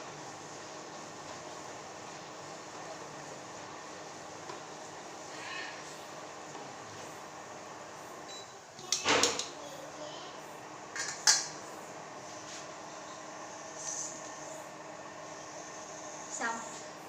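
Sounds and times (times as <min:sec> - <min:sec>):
low background hum: 0:00.0 - 0:17.0
kitchenware clattering: 0:11.0 - 0:11.6.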